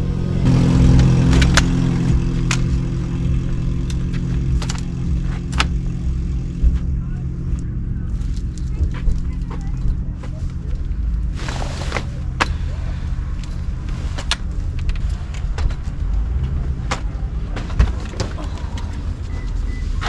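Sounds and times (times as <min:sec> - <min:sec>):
vehicle engine rumbling: 0:00.0 - 0:20.0.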